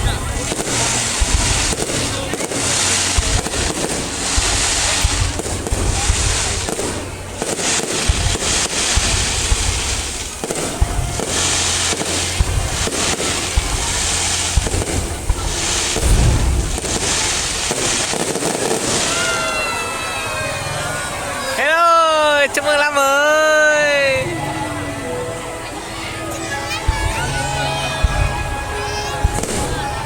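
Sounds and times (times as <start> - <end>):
fireworks deep booms: 0.0 - 19.6, 26.8 - 30.0
fireworks crackling: 0.0 - 30.0.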